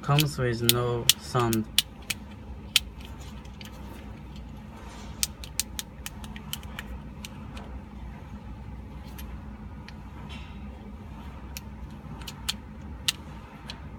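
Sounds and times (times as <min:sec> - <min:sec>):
fidget cube clicks: 0:00.1 - 0:03.7, 0:05.2 - 0:07.4, 0:11.5 - 0:13.8
low hum: 0:00.6 - 0:13.9.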